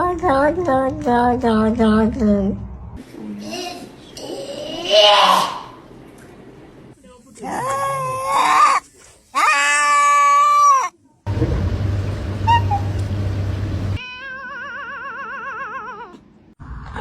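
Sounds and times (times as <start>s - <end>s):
cat yowling: 7.5s - 8.8s, 9.4s - 11.0s.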